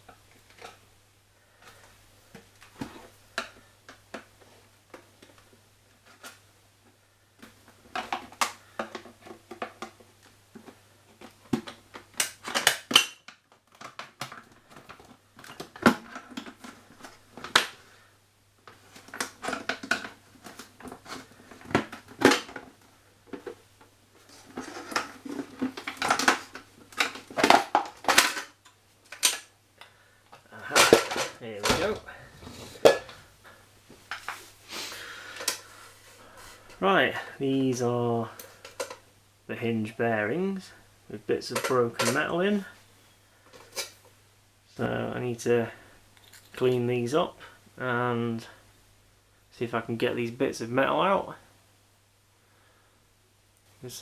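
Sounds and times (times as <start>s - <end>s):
faint low hum: 14.4s - 54.0s
plastic parts being prised: 30.7s - 34.4s.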